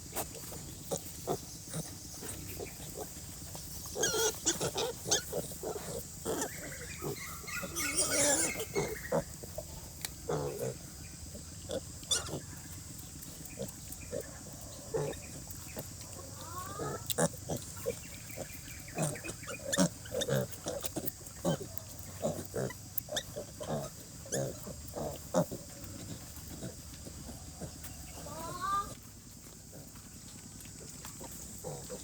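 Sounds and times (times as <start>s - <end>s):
pigs grunting: 0.0s - 32.0s
piglet squealing: 4.0s - 5.4s, 6.3s - 9.3s.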